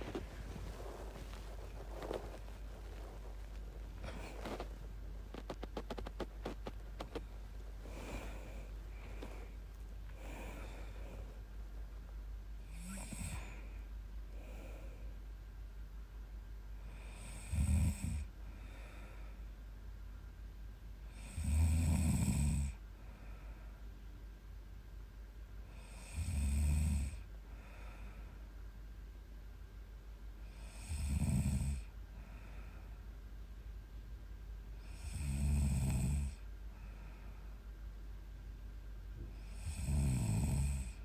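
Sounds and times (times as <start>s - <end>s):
quiet breaths: 0.0s - 41.0s
woman snoring: 12.7s - 13.6s, 17.0s - 18.3s, 21.1s - 22.8s, 30.6s - 31.8s, 34.8s - 36.4s, 39.4s - 41.0s.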